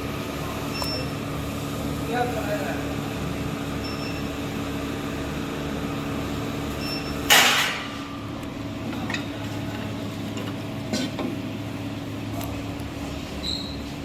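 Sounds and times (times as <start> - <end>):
furnace electrical hum: 0.0 - 14.0.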